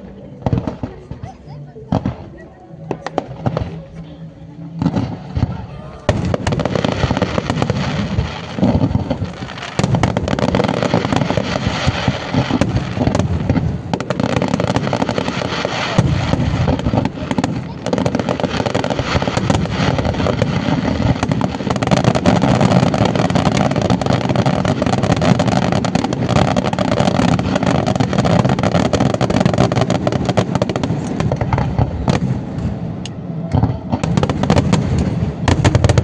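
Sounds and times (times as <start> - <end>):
fireworks bangs and crackling: 0.0 - 4.0, 4.8 - 36.0.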